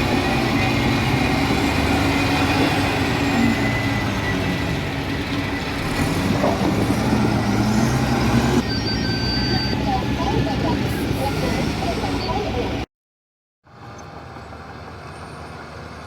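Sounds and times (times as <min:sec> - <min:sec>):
heavy diesel engine running: 0:00.0 - 0:12.8.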